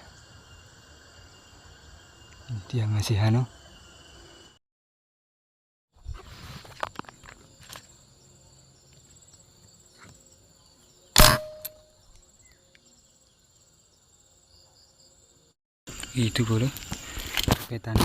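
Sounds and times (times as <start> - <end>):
insects buzzing: 0.0 - 4.6, 6.1 - 18.0
air rifle shot: 11.2 - 11.8.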